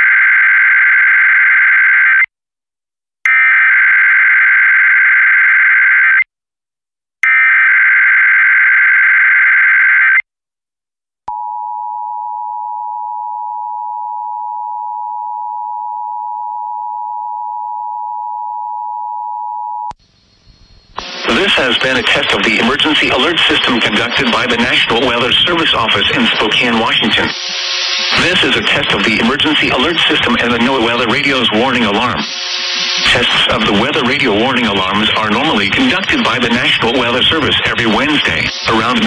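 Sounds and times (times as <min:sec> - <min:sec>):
warbling digital data bursts: 0:20.8 - 0:39.0.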